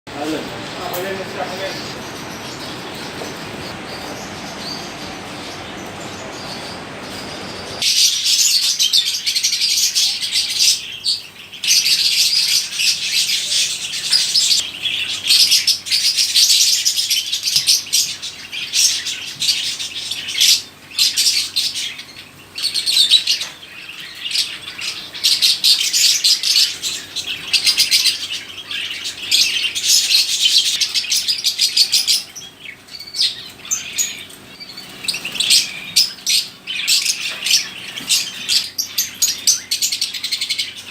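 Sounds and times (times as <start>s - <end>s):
small birds chirping: 0.1s - 40.9s.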